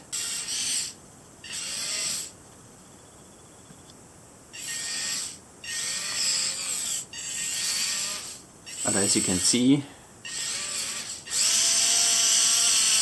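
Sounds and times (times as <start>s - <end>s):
small electric motor whirring: 0.1s - 2.4s, 4.6s - 9.6s, 10.3s - 13.0s.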